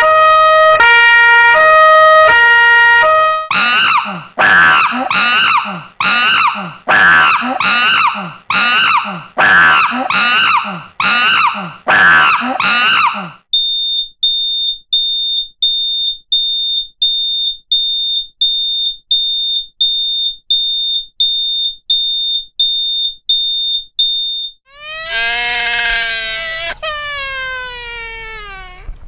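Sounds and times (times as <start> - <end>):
loud wailing cry-like sound: 3.5 - 13.3, 24.7 - 29.0
smoke alarm beeping: 13.6 - 24.6
wavering voice-like sound: 24.7 - 28.9.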